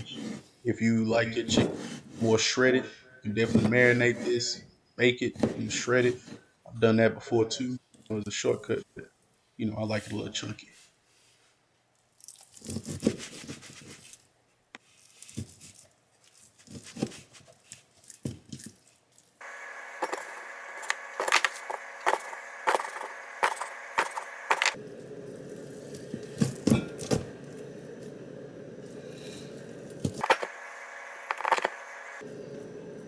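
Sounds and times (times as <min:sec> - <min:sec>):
steady hum: 0:19.4 - 0:33.0.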